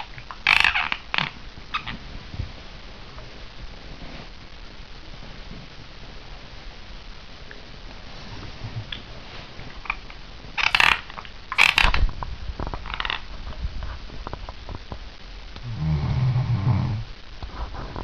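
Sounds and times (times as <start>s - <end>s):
person snoring: 15.6s - 17.1s.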